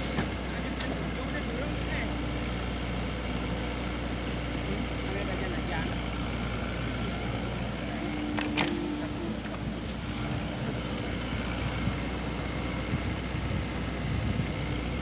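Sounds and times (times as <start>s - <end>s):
excavator diesel engine rumble: 0.0s - 15.0s
wind noise on microphone: 10.1s - 15.0s.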